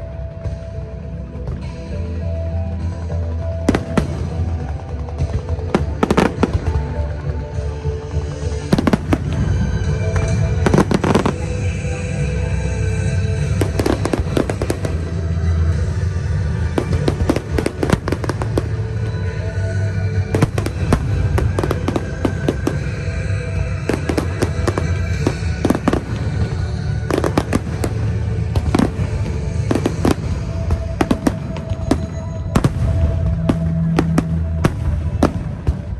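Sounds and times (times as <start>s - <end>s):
fireworks crackling and banging: 0.0s - 35.9s
music playing: 0.0s - 35.9s
fireworks bangs: 13.4s - 15.2s, 20.3s - 35.9s.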